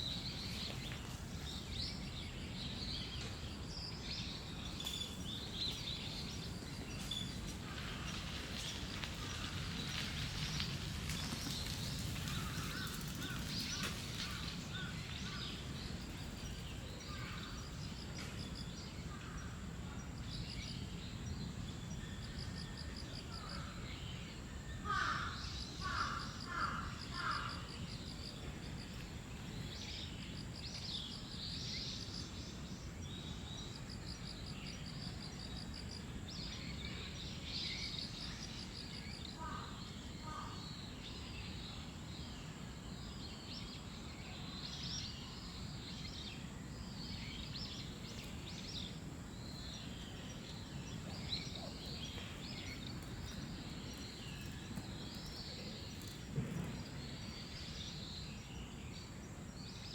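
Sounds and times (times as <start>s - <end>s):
small birds chirping: 0.0s - 59.9s
crow cawing: 24.9s - 27.6s.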